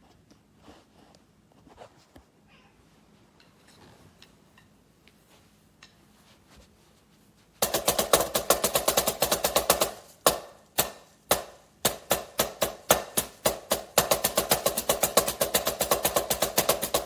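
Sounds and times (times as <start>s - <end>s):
drumsticks striking practice pad: 7.6s - 17.0s.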